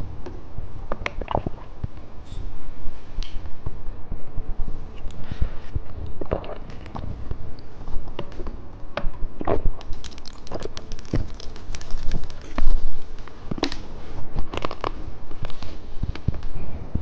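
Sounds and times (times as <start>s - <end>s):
candy crackling and crinkling: 9.8s - 13.9s.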